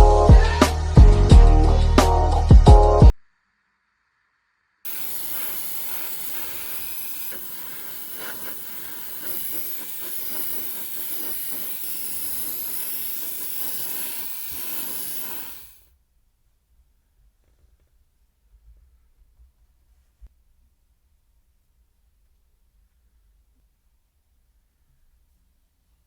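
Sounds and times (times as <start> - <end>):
spraying hiss: 4.9 - 15.8.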